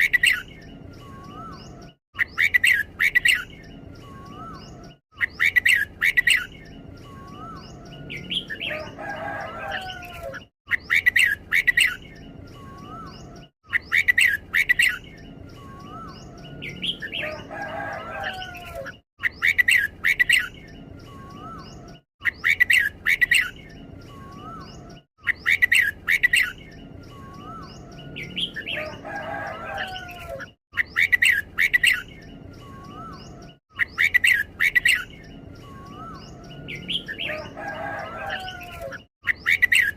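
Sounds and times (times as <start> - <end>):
bird whistled song phrases: 0.0 - 17.4, 18.2 - 39.9.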